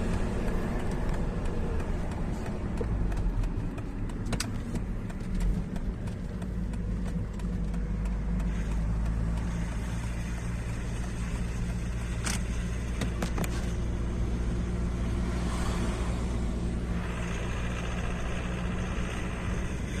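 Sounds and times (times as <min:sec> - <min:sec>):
sharp clicks from car: 0:00.0 - 0:16.0
car engine running under load: 0:00.0 - 0:20.0
rattle from car: 0:00.0 - 0:20.0.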